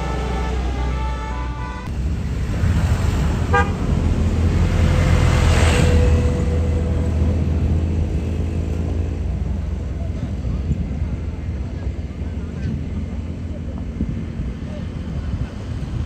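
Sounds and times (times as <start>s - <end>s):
bus horn playing a tune: 0.0s - 2.0s, 3.4s - 7.8s
bus engine running loudly: 0.0s - 16.0s
short horn toot: 3.5s - 3.9s.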